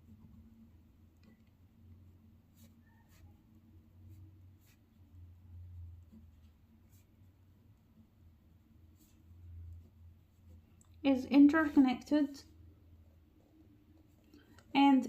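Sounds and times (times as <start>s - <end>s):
pen scratching on paper: 0.0s - 5.2s, 5.9s - 7.4s, 8.8s - 10.7s
low steady hum: 0.0s - 15.0s.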